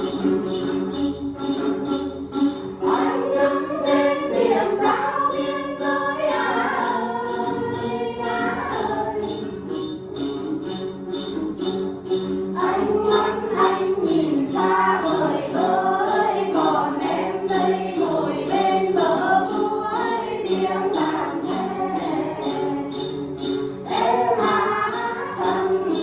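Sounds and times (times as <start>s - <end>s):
jingling bells: 0.0s - 26.0s
sustained accompaniment: 0.0s - 26.0s
voices singing: 2.8s - 9.8s, 12.6s - 26.0s.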